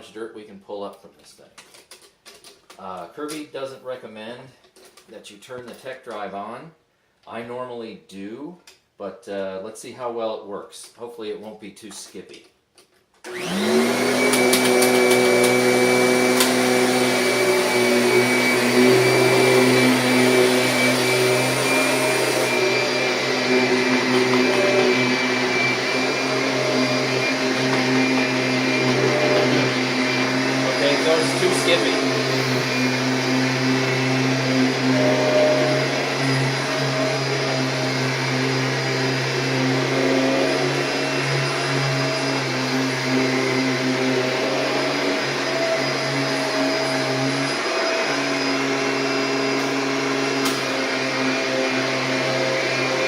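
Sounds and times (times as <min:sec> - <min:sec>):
vacuum cleaner motor whining: 0:13.2 - 0:53.0.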